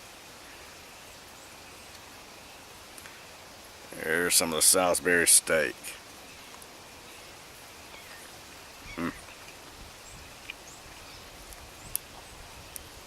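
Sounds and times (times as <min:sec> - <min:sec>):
outdoor background hiss: 0:00.0 - 0:13.0
short vocal murmur: 0:08.8 - 0:09.4.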